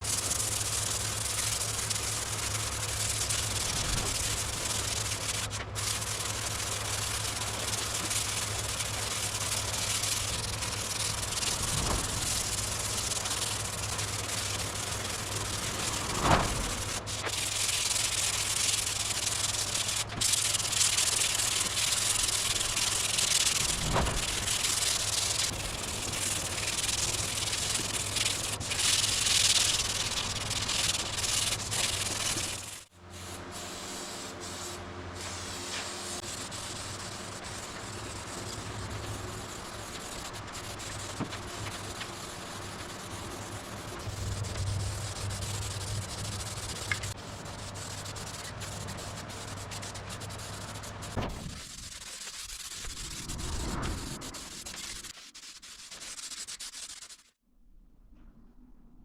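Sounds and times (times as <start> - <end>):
sanding hiss: 0.0 - 57.3
low hum: 41.6 - 50.0, 52.6 - 55.1, 57.4 - 59.0.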